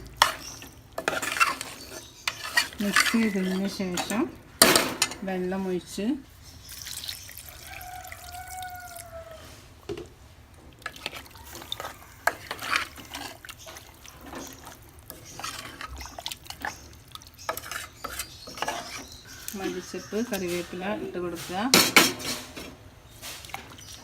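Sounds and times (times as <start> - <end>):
spoon stirring and scraping pot: 0.0 - 5.9, 9.8 - 24.0
water pouring into a pot: 6.6 - 9.2, 10.7 - 18.2.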